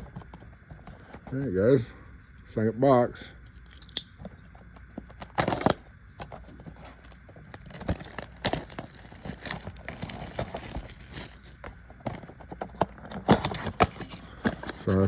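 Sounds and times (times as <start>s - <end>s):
plastic wrap crinkling: 5.0s - 15.0s
loud box rip: 5.2s - 5.8s, 7.0s - 11.6s.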